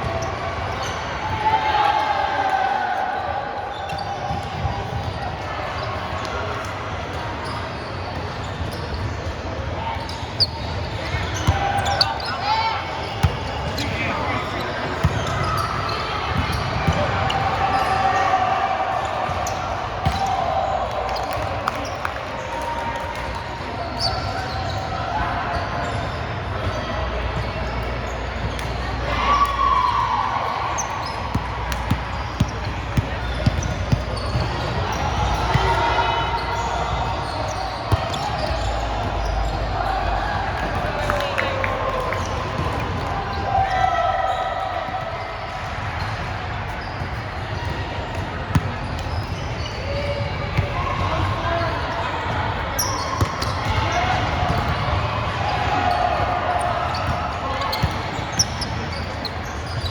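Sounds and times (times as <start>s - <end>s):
gymnasium hall noise: 0.0s - 59.9s
players' voices: 0.0s - 59.9s.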